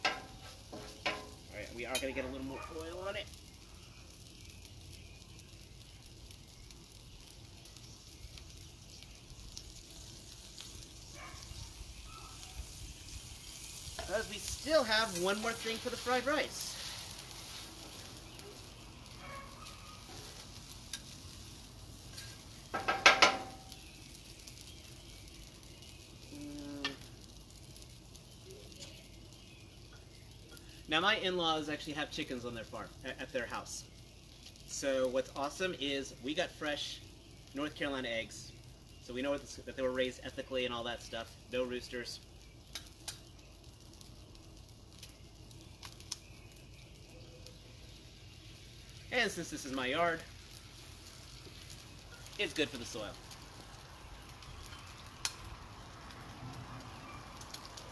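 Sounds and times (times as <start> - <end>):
rice sizzling on griddle: 0.0 - 57.9
stirring on griddle: 0.0 - 57.9.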